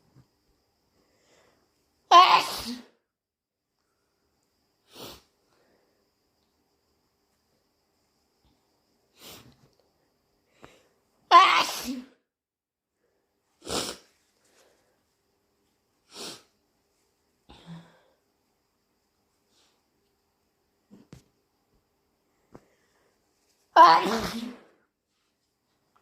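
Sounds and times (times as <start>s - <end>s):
person sneezing: 2.1s - 3.0s, 11.3s - 12.2s, 13.6s - 14.0s, 23.8s - 24.8s.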